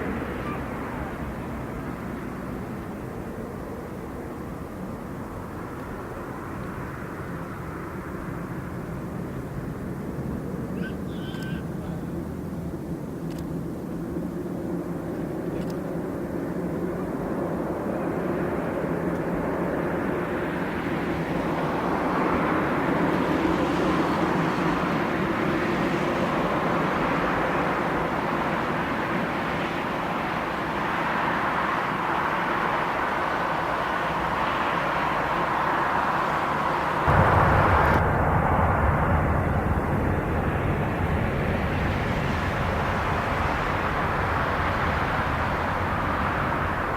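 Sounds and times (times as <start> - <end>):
jet engines roaring: 0.0 - 46.9
deep rumble: 37.0 - 46.9.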